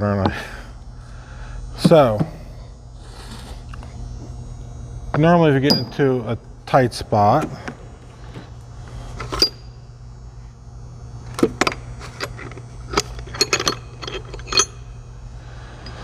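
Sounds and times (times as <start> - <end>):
low steady hum: 0.0 - 16.0
metal sockets clinking: 11.4 - 14.8.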